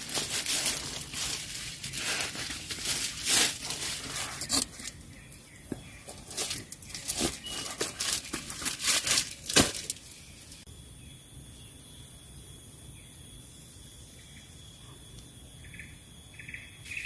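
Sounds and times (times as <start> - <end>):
sharp crackle: 0.0 - 5.0, 6.1 - 10.6
crinkling and rustling: 0.0 - 5.1, 5.7 - 10.6.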